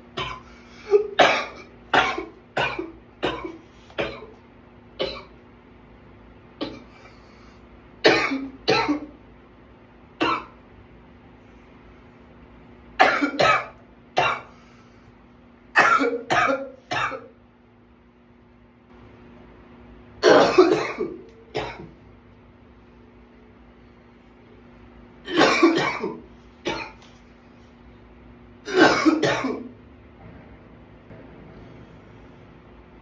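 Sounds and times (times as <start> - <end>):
man coughing: 0.2 - 4.4, 5.0 - 5.4, 8.0 - 9.2, 13.0 - 14.6, 15.8 - 17.4, 20.2 - 22.0, 25.3 - 27.1, 28.7 - 29.7.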